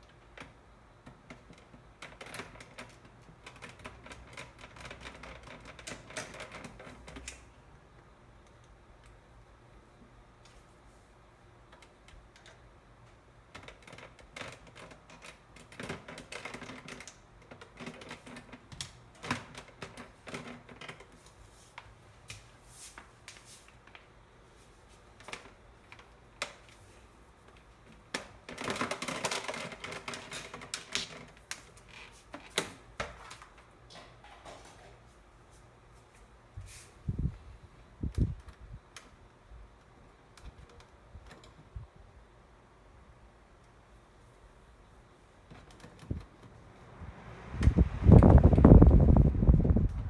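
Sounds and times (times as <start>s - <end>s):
plastic parts clicking and rattling: 13.5s - 21.2s, 27.9s - 34.7s.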